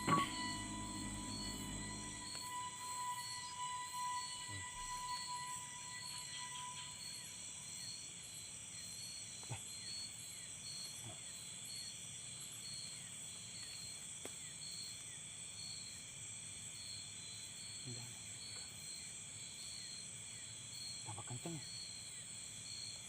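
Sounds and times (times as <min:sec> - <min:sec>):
faint steady tone: 0:00.0 - 0:09.1
crickets trilling: 0:00.0 - 0:16.1.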